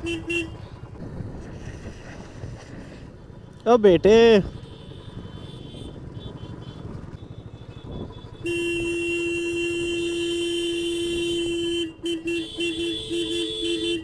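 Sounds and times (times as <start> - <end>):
vehicle horn blaring: 0.0 - 0.9, 4.5 - 14.0
motorcycle riding noise: 0.0 - 14.0.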